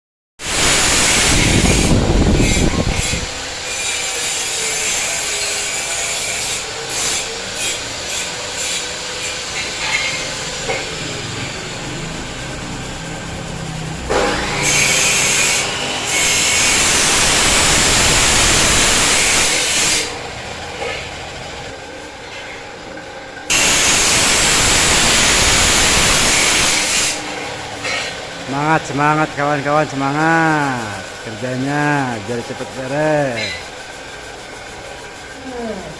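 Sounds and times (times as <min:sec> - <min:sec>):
steel grinding rasp: 0:00.8 - 0:11.6, 0:14.1 - 0:20.2, 0:23.5 - 0:28.3, 0:30.6 - 0:35.2.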